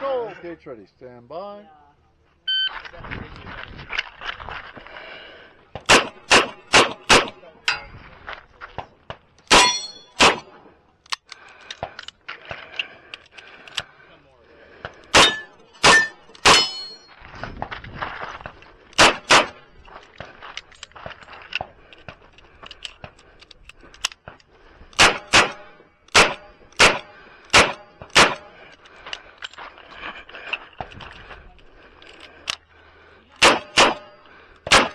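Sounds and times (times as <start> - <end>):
revolver gunshots: 5.9 - 7.5, 9.5 - 10.6, 15.1 - 17.0, 19.0 - 19.6, 25.0 - 28.6, 33.4 - 34.1, 34.7 - 34.9
steel targets ringing: 9.5 - 10.2, 15.2 - 17.2.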